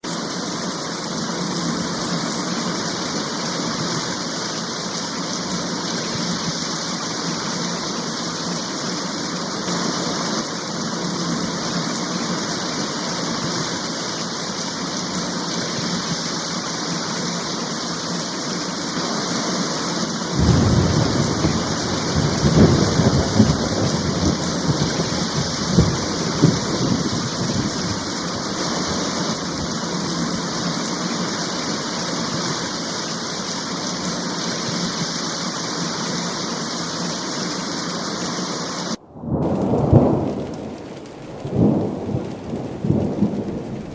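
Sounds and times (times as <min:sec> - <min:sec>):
heavy rain falling: 0:00.0 - 0:43.9
thunder rumbling and crackling: 0:20.3 - 0:30.7, 0:39.0 - 0:43.9.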